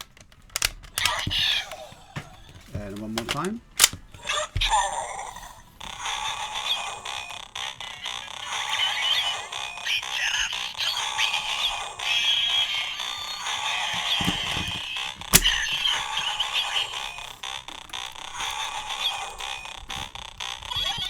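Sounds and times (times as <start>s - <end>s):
sharp toy click: 3.2s - 4.4s, 15.2s - 17.1s
toy electronic music and effects: 4.2s - 21.0s.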